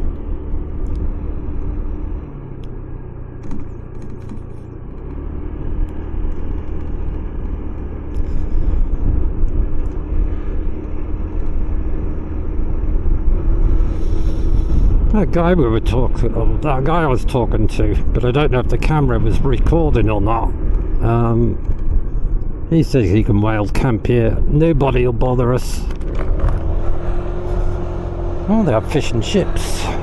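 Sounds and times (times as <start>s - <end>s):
scooter engine running: 2.8s - 15.0s
wind on microphone: 13.3s - 15.2s.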